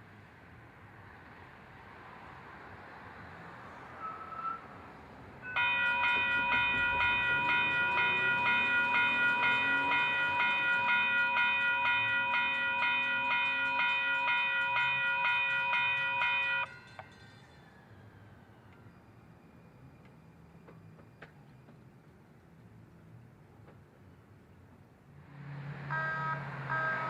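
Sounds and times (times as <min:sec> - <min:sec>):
crossing bell ringing: 0:05.4 - 0:17.9, 0:25.9 - 0:27.0.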